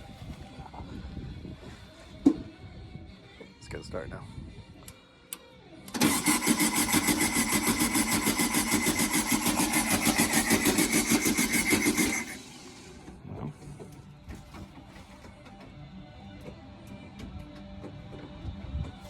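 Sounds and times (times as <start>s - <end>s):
car starter cranking engine: 5.9s - 13.2s.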